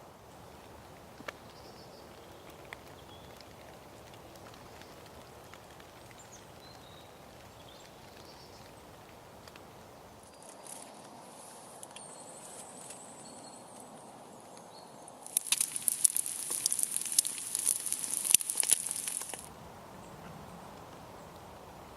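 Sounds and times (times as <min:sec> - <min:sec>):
small birds calling: 0:00.4 - 0:03.7, 0:04.3 - 0:10.9, 0:14.6 - 0:21.9.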